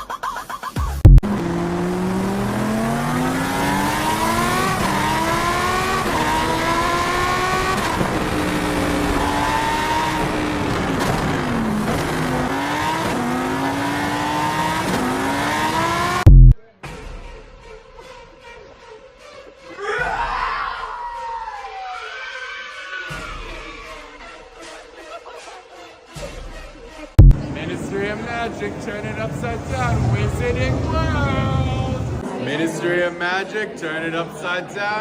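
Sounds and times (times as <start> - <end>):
car engine accelerating: 1.0 - 16.6, 27.2 - 32.2.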